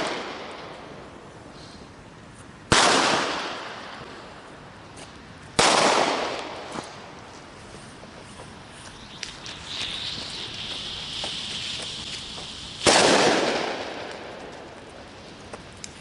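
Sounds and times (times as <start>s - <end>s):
loud firework bangs with echo: 12.4s - 14.6s.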